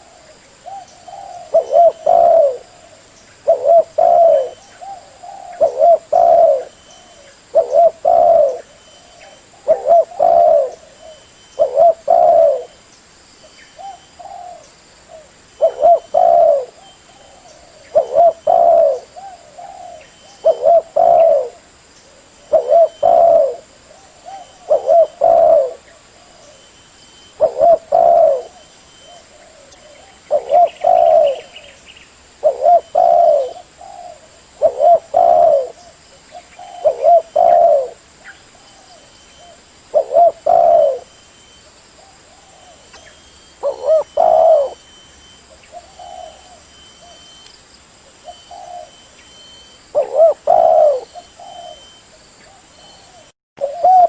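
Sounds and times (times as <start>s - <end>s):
dove cooing: 0.0s - 12.8s, 13.8s - 31.8s, 32.4s - 47.4s, 48.1s - 54.0s.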